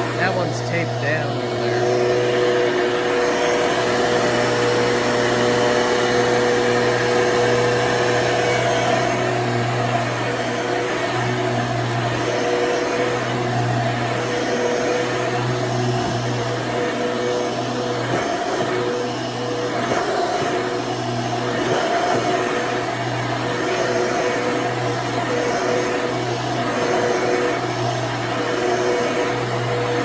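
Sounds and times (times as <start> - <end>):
vacuum cleaner running: 0.0 - 30.0.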